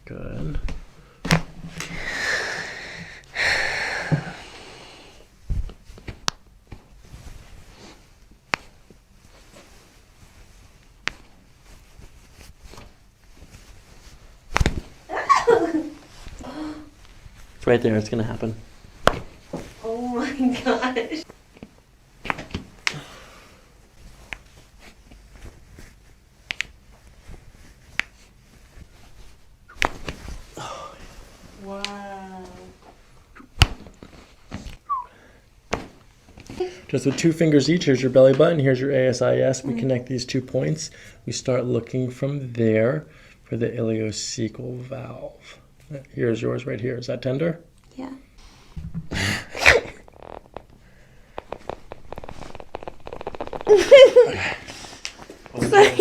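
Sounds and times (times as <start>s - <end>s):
person breathing: 1.8s - 5.3s, 22.9s - 23.8s, 30.5s - 31.4s, 48.4s - 49.6s, 50.8s - 51.5s.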